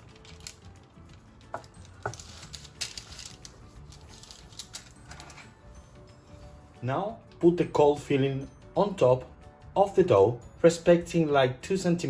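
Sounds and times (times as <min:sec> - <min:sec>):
dough and parchment rustling: 0:00.0 - 0:05.6
soft background music: 0:00.0 - 0:12.0.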